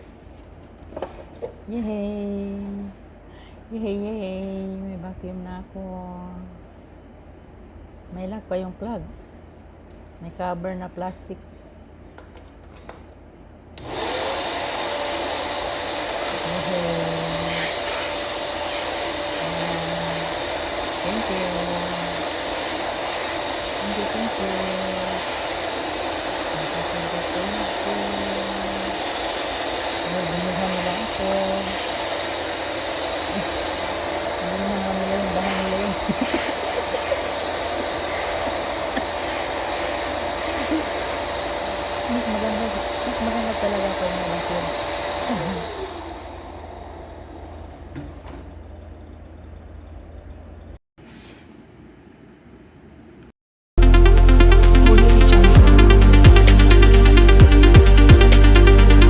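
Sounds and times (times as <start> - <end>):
vacuum motor winding down: 13.8 - 48.6, 53.8 - 59.0
vacuum cleaner running: 13.8 - 49.0, 53.8 - 59.0.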